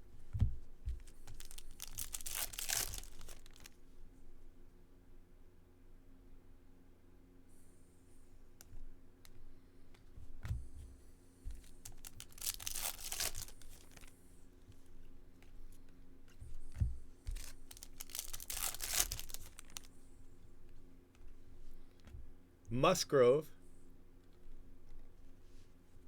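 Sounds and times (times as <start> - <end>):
wrappers tearing and crinkling: 1.0 - 3.8, 11.6 - 14.1, 17.3 - 19.9.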